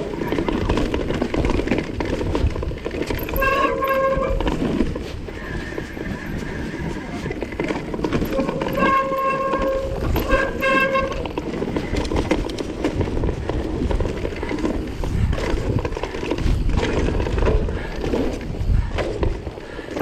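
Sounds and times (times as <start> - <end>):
bike rumbling on rough trail: 0.0 - 20.0
bike disc brakes squealing: 3.1 - 7.4, 8.2 - 12.0.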